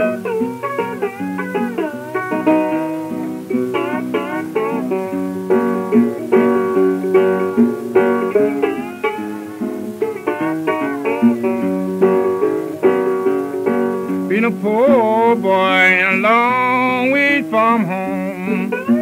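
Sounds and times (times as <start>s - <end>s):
acoustic guitar plucking: 0.0s - 19.0s
banjo plucking: 0.0s - 19.0s.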